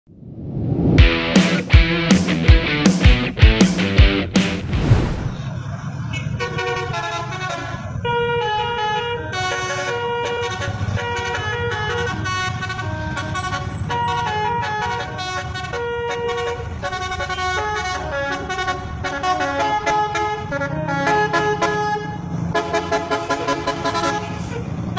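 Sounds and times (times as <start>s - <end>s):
low rumble: 4.6s - 5.6s
bus horn playing a tune: 6.1s - 24.9s.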